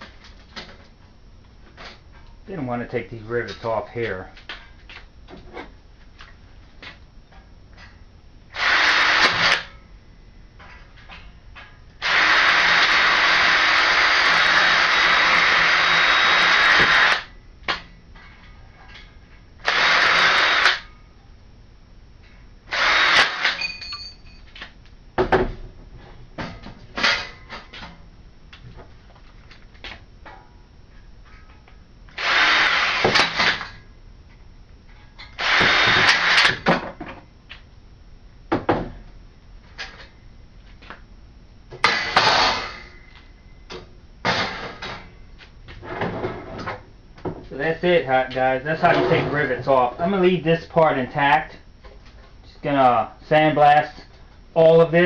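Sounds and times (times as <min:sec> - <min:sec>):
drill drilling metal: 0:08.5 - 0:09.7, 0:12.0 - 0:17.3, 0:19.6 - 0:20.9, 0:22.7 - 0:23.8, 0:32.2 - 0:33.8, 0:35.4 - 0:36.7, 0:41.8 - 0:42.9.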